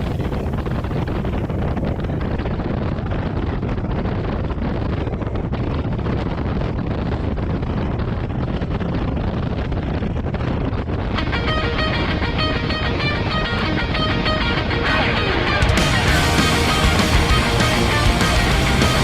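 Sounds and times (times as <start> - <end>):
wind rushing over microphone: 0.0 - 19.0
motorcycle engine rumble: 11.1 - 19.0.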